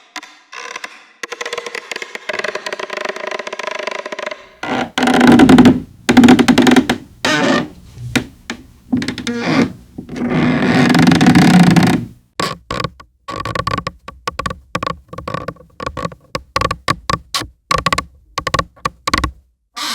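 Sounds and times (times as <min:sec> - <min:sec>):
wooden stairs creaking under footsteps: 0:04.6 - 0:17.2.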